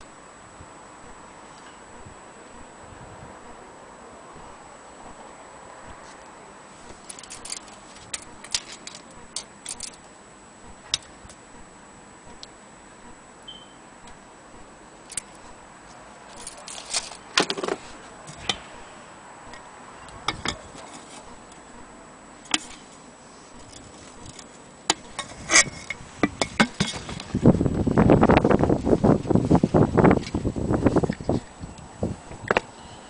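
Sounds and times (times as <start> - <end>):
clinks of small metal and glass parts: 7.1 - 10.0, 16.3 - 17.2.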